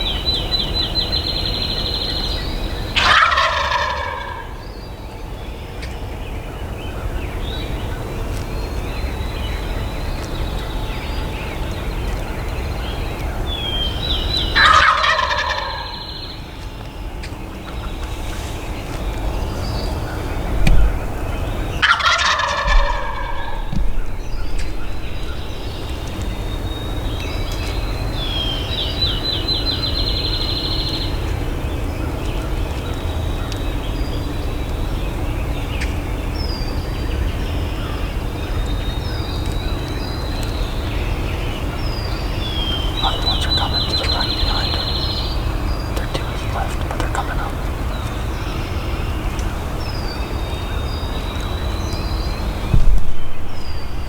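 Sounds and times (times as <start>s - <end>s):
songbirds chirping: 0.0s - 54.0s
steady low rumble: 0.0s - 54.0s
turkey gobbling: 1.7s - 4.8s, 12.8s - 16.6s, 17.2s - 30.0s, 41.6s - 49.8s
low thump: 20.5s - 21.3s, 22.7s - 25.6s, 52.7s - 53.4s.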